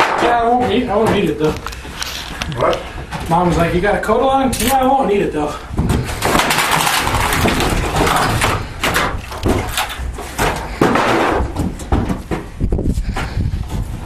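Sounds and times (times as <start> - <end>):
wooden boards knocked loose: 0.0 - 1.6, 5.7 - 12.6.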